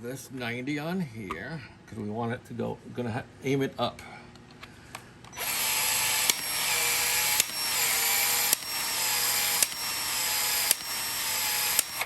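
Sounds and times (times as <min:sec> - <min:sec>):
power tool motor whirring: 0:05.3 - 0:12.0
sharp tool clicks: 0:05.4 - 0:12.0.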